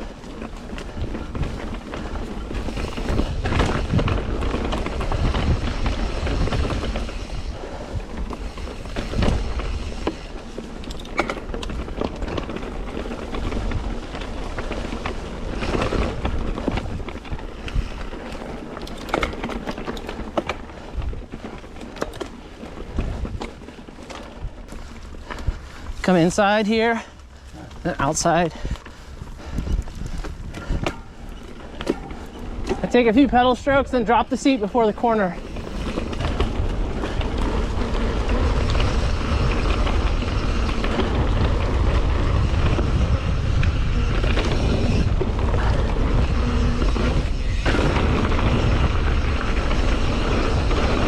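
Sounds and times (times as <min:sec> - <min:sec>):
wind on microphone: 0:00.0 - 0:10.6, 0:26.8 - 0:34.4, 0:35.3 - 0:51.0
bike knocking and rattling: 0:00.0 - 0:51.0
tyres rolling over dirt: 0:00.0 - 0:51.0.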